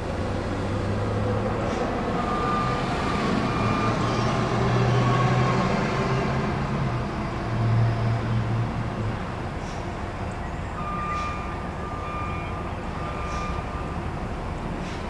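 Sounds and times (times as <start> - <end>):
faint reversing alarm beeping: 2.1 - 4.3, 10.4 - 14.3.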